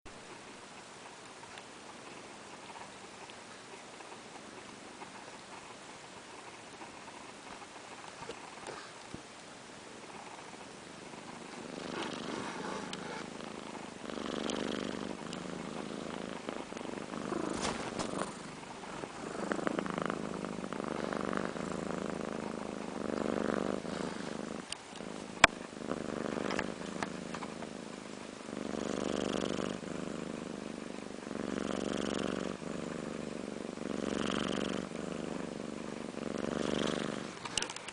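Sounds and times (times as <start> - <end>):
cat snoring: 10.0 - 37.6.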